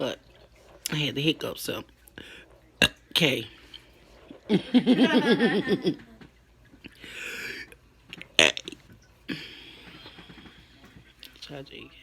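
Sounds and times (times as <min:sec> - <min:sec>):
woman burping: 0:08.4 - 0:09.6.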